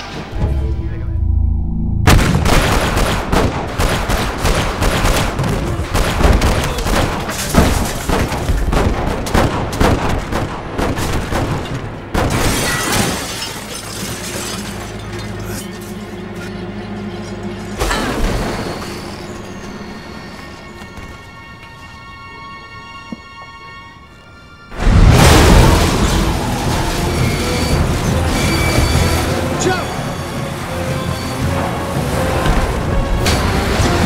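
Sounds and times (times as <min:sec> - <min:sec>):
low rumble: 0:00.0 - 0:03.8
rapid gunfire and impacts: 0:02.1 - 0:12.9.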